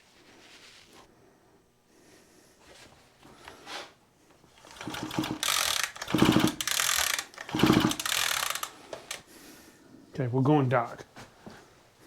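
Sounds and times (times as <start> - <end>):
chainsaw recoil starter pulled: 4.6 - 9.2
engine turning over with whirring rattle: 4.6 - 9.2.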